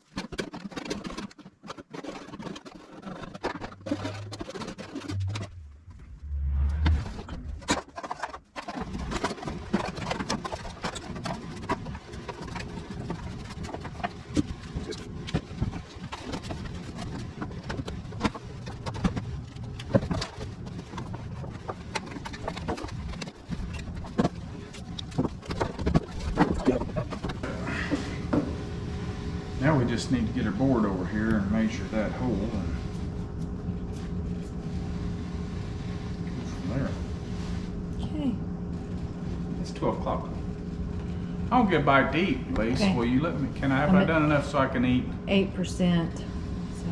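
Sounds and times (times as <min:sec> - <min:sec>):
knocks and clicks from handling materials: 0:00.0 - 0:05.6, 0:06.9 - 0:27.4
low steady hum: 0:02.0 - 0:46.9.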